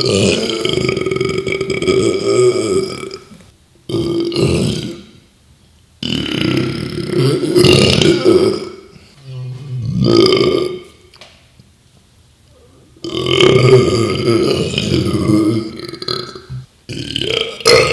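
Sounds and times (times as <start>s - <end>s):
man belching loudly: 0.0s - 5.2s, 6.0s - 9.0s, 9.7s - 10.9s, 13.0s - 17.9s.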